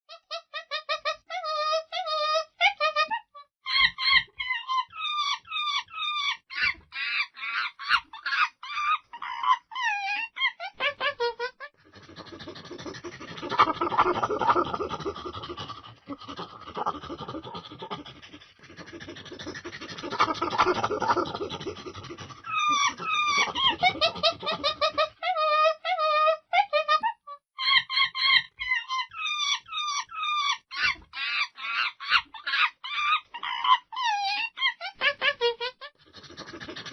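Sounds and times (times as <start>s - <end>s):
monkeys calling: 3.7s - 11.2s, 11.8s - 27.0s, 27.6s - 35.5s.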